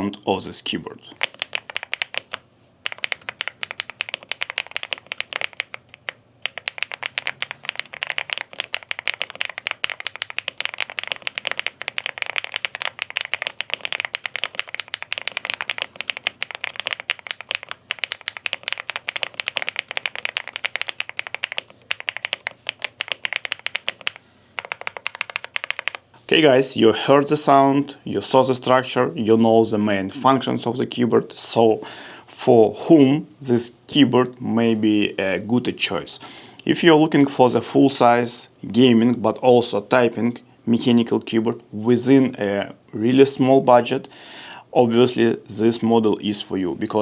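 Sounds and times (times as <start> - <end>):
mechanical keyboard typing: 1.2 - 26.0.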